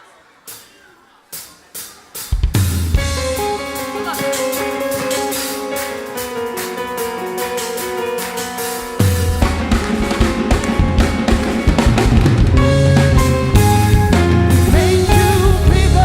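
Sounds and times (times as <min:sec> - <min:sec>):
drums: 0:00.0 - 0:16.0
bass guitar: 0:02.4 - 0:05.9, 0:09.0 - 0:16.0
guitar playing chords: 0:02.9 - 0:16.0.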